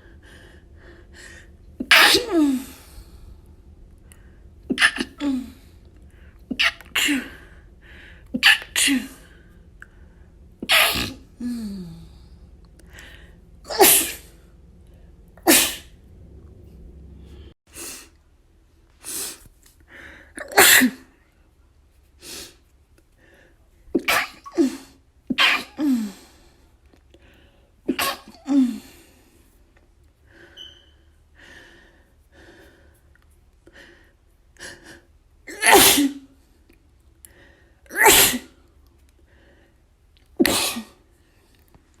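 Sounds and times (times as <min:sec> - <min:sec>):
catches of breath: 0:00.0 - 0:04.7, 0:07.2 - 0:10.5, 0:11.3 - 0:13.6
person sneezing: 0:01.8 - 0:03.0, 0:04.7 - 0:05.7, 0:06.5 - 0:07.6, 0:08.3 - 0:09.4, 0:10.6 - 0:12.1, 0:13.7 - 0:14.3, 0:15.4 - 0:15.9, 0:20.4 - 0:21.1, 0:23.9 - 0:26.3, 0:27.9 - 0:29.0, 0:35.5 - 0:36.3, 0:37.9 - 0:38.6, 0:40.4 - 0:41.0.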